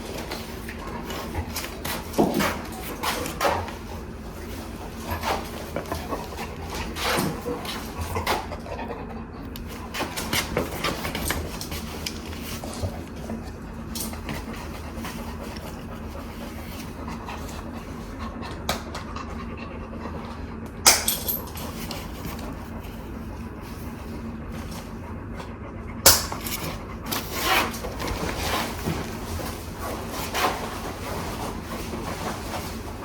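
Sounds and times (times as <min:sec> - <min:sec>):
dog sounds: 0:00.0 - 0:33.0
handling clicks and rustling: 0:09.5 - 0:17.6, 0:20.8 - 0:25.0, 0:26.1 - 0:33.0.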